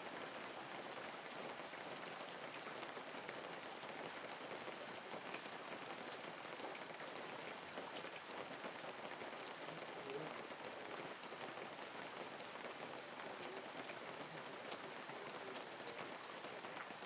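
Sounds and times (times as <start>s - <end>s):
light rain hiss: 0.0s - 17.0s.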